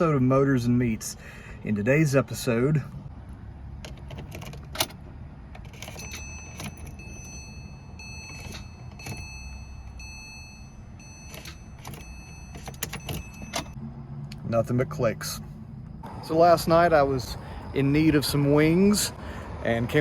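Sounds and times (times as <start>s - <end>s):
car ignition clicking: 10.9s - 14.4s.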